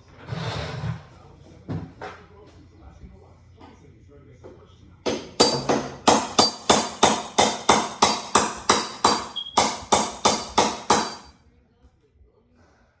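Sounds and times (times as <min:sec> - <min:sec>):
hammer striking with ringing blows: 0:05.1 - 0:11.3.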